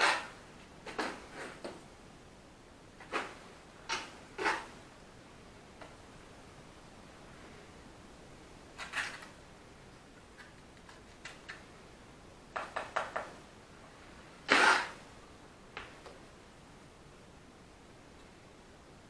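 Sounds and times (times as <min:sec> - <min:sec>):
trowel scraping mortar: 0:00.0 - 0:01.7, 0:03.0 - 0:04.8, 0:08.8 - 0:09.4, 0:14.5 - 0:15.0.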